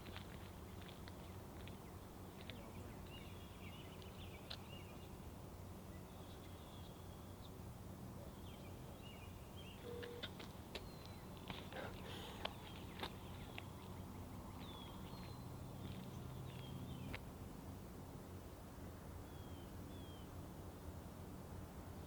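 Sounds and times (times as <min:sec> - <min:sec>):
distant bird calls: 0:08.2 - 0:17.2.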